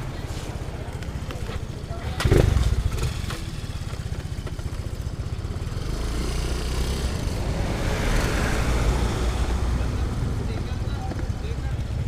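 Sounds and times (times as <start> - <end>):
motorcycle engine at low revs: 1.1 - 9.0.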